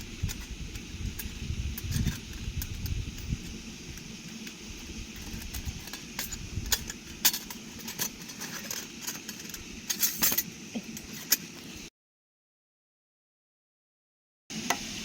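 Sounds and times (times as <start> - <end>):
metal camping gear clicking: 0.0 - 11.6
steady outdoor hiss: 0.0 - 11.9, 14.5 - 15.0.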